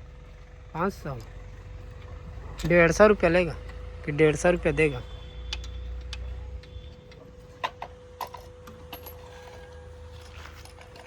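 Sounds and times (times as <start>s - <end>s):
faint steady hum: 0.0s - 11.0s
spanners clinking: 0.8s - 11.0s.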